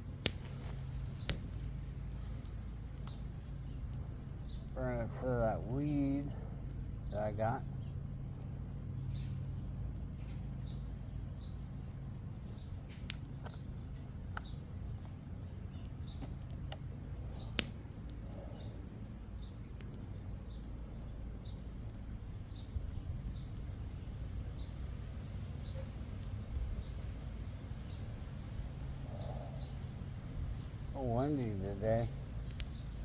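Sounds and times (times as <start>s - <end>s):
campfire popping: 0.0s - 33.0s
faint bird chirping: 0.9s - 17.6s, 18.2s - 33.0s
wind rumbling on microphone: 21.4s - 33.0s.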